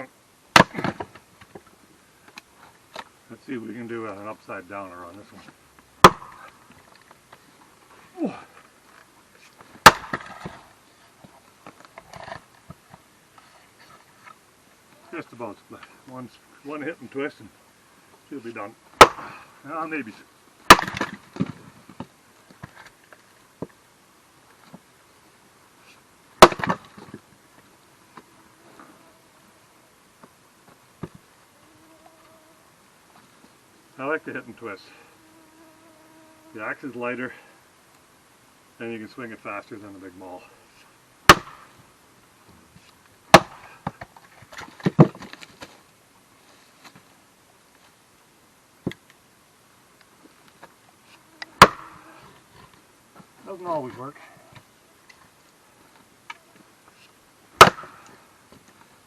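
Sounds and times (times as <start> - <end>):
axe striking firewood: 0.5 - 1.2, 6.0 - 6.5, 9.8 - 10.6, 19.0 - 19.4, 20.7 - 21.6, 26.4 - 27.2, 41.3 - 41.7, 43.3 - 44.1, 51.6 - 52.0, 57.6 - 58.1
wood cracking apart: 20.7 - 21.6.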